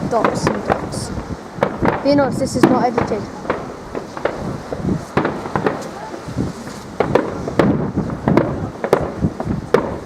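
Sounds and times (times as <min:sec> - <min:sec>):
fireworks exploding with bangs: 0:00.0 - 0:10.0.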